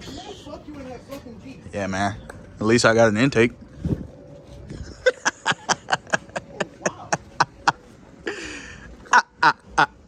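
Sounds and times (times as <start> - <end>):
man laughing: 4.7 - 10.0.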